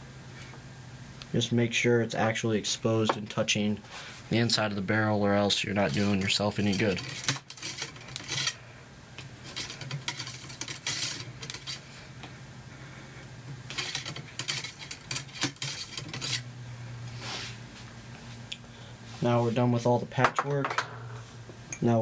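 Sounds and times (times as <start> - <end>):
low steady hum: 0.0 - 22.0
cleaning rod scraping in rifle barrel: 5.8 - 8.6, 13.7 - 16.5.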